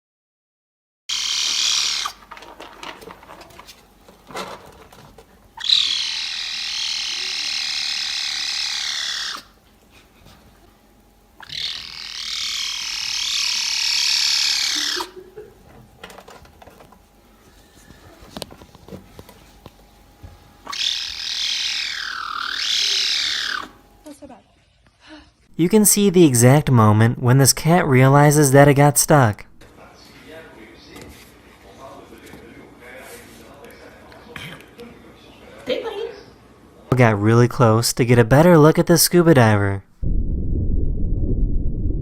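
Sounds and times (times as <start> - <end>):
cat yowling: 1.1 - 2.2, 5.6 - 9.5, 11.4 - 15.2, 20.7 - 23.8.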